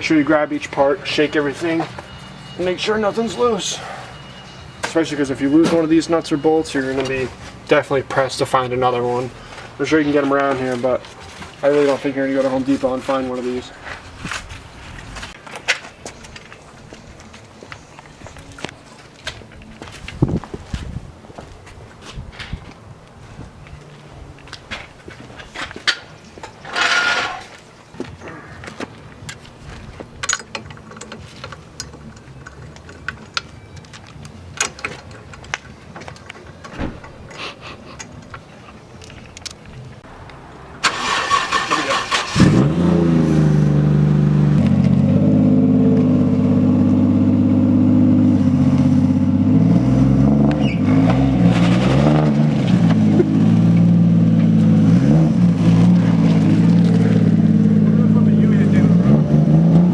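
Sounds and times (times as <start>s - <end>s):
car engine idling: 40.1s - 49.6s, 52.3s - 58.9s
car engine cranking and starting: 40.2s - 59.9s
engine throttle blips: 40.8s - 59.9s.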